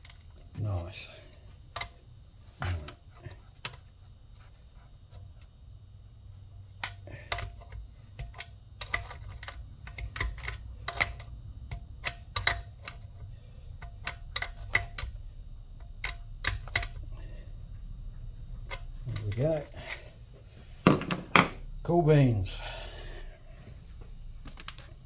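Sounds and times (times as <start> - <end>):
low steady hum: 0.0 - 25.0
light clicks and knocks of parts: 1.3 - 2.0, 6.8 - 17.4, 24.0 - 25.0.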